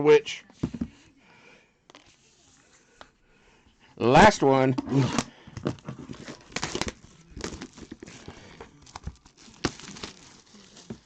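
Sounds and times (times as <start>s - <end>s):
plastic packaging crinkling and tearing: 6.0s - 11.0s.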